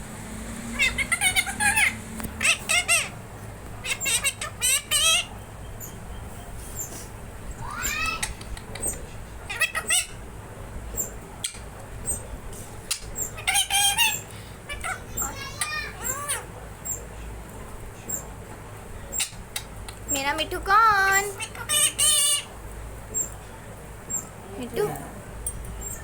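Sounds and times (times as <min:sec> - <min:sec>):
parrot squawking and chattering: 0:00.5 - 0:06.0, 0:06.7 - 0:10.3, 0:12.9 - 0:17.0, 0:19.1 - 0:23.4.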